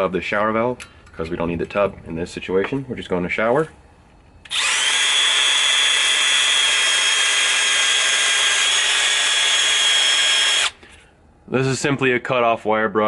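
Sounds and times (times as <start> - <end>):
power drill whining: 4.5 - 10.8.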